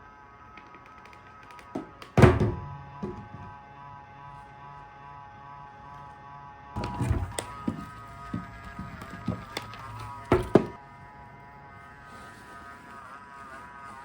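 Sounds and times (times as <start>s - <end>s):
knocks and thumps: 1.7s - 3.6s, 6.8s - 10.8s
steady hum: 1.7s - 13.8s.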